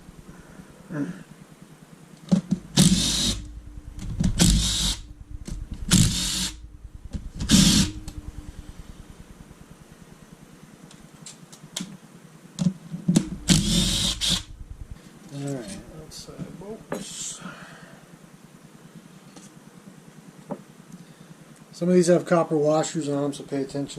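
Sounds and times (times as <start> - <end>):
power tool spinning bolts: 2.8 - 3.4, 13.3 - 14.9.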